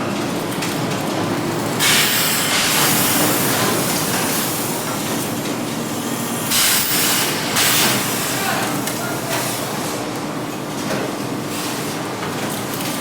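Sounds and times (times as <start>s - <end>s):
machinery noise with faint hum: 0.0s - 13.0s
loud hiss: 6.0s - 8.5s.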